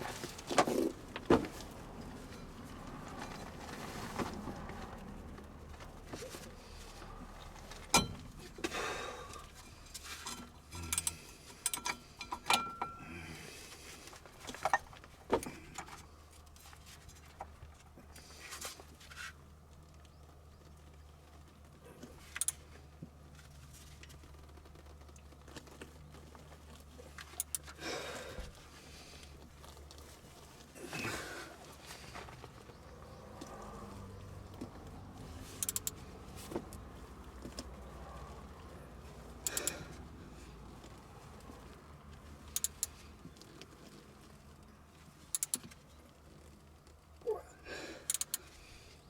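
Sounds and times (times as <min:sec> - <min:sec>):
metal tools clinking: 0:10.1 - 0:13.1.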